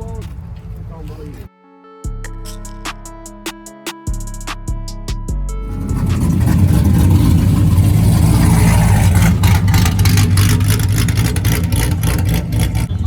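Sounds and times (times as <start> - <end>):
car engine running low: 5.6 - 13.0.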